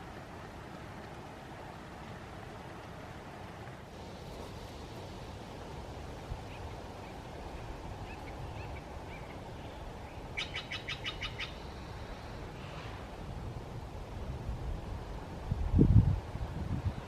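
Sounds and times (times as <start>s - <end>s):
bird chirping: 6.5s - 11.8s.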